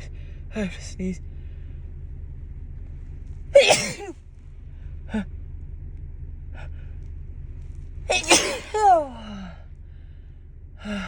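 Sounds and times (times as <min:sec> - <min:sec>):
low steady rumble: 0:00.0 - 0:11.0
woman sneezing: 0:03.6 - 0:04.1, 0:08.1 - 0:09.1.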